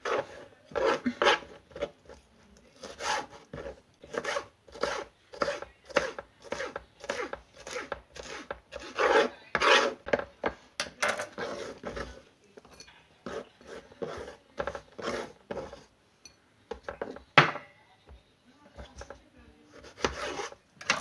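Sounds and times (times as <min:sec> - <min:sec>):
rasping scraping strokes: 0:00.0 - 0:02.2, 0:02.8 - 0:10.0, 0:11.3 - 0:12.2, 0:13.2 - 0:15.9, 0:19.8 - 0:20.6.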